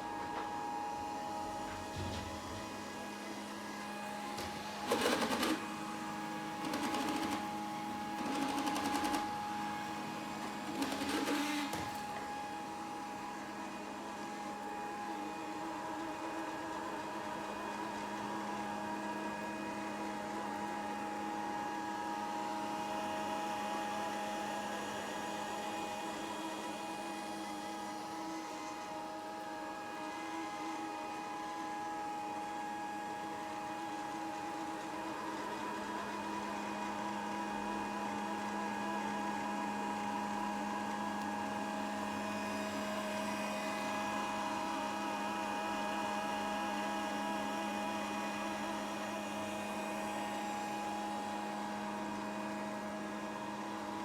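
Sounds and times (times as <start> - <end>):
robot vacuum motor whine: 0.1 - 12.6.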